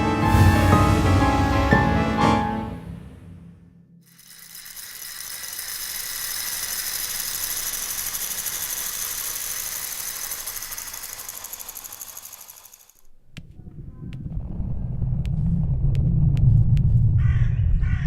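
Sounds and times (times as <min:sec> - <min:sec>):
fast mechanical rattle: 0:04.0 - 0:13.1.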